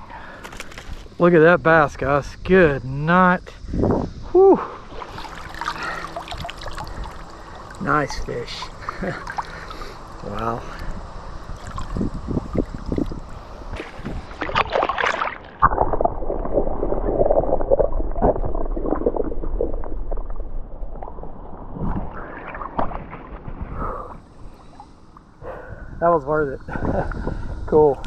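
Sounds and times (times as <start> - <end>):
wind rumbling on microphone: 0.7 - 9.2, 10.2 - 24.6, 25.4 - 28.0
water sloshing and gurgling: 3.7 - 26.0.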